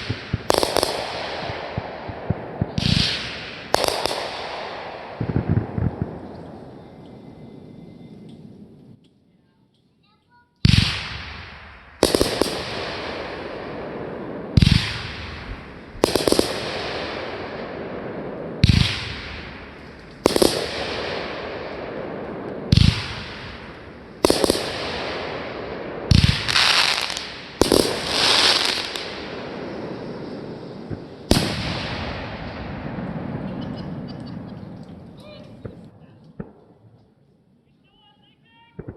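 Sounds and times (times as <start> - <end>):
firework explosions: 0.0 - 9.2, 10.6 - 37.2
crackling hiss: 10.8 - 37.3.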